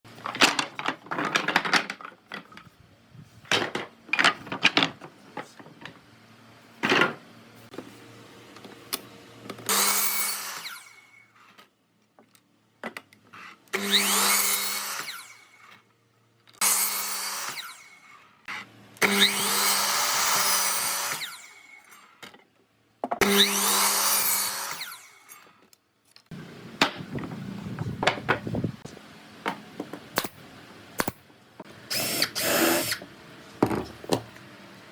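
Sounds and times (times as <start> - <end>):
power tool cutting wood: 9.7 - 11.4, 13.7 - 15.7, 16.6 - 22.1, 23.2 - 25.4, 31.8 - 33.1.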